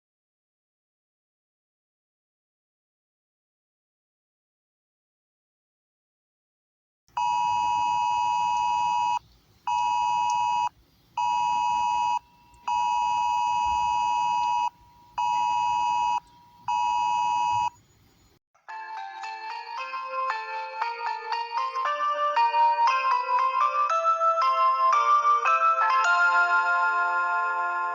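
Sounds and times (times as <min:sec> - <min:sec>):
two-tone alert beeps on a phone: 0:07.2 - 0:17.8
chiming melody: 0:18.7 - 0:27.9.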